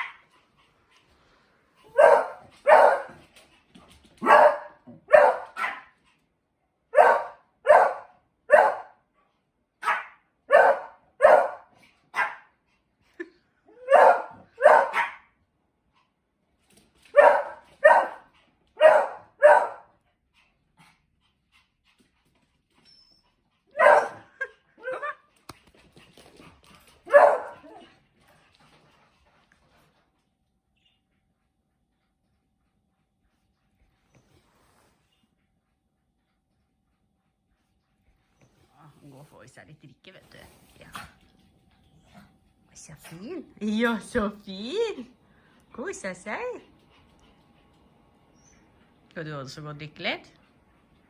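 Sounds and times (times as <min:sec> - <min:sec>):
dog barking: 0:00.0 - 0:00.2, 0:01.9 - 0:03.2, 0:04.2 - 0:05.9, 0:06.9 - 0:09.0, 0:09.8 - 0:12.5, 0:13.8 - 0:15.3, 0:17.1 - 0:19.9, 0:23.7 - 0:24.3, 0:27.1 - 0:27.8.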